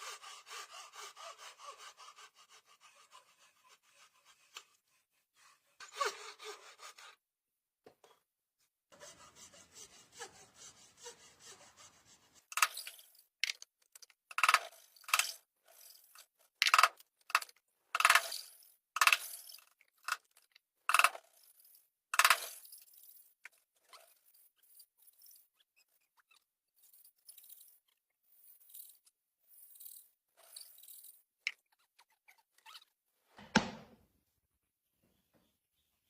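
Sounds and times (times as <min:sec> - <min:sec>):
hand tool scraping wood: 0:00.0 - 0:07.2.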